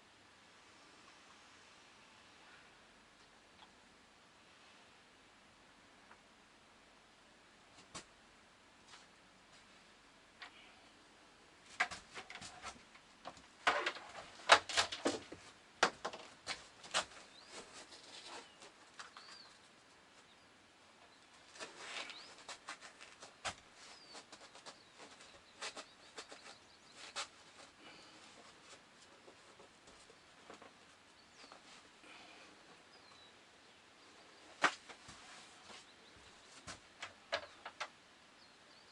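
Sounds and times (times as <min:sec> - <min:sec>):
faint high bird-like chirps: 0:17.2 - 0:22.6.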